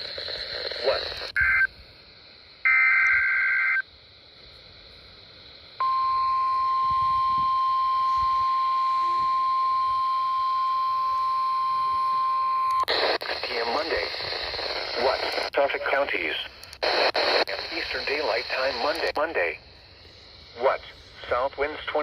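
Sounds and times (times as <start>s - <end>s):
steady warning alarm tone: 2.6s - 3.8s, 5.8s - 12.9s.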